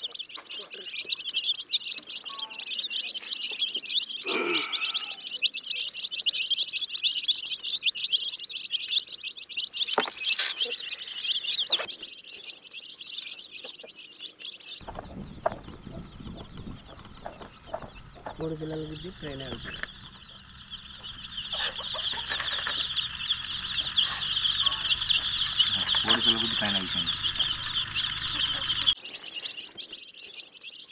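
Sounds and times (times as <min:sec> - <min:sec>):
chicks peeping: 0:00.0 - 0:30.9
low rumbling noise: 0:14.8 - 0:29.0
sharp clicks: 0:16.5 - 0:29.0.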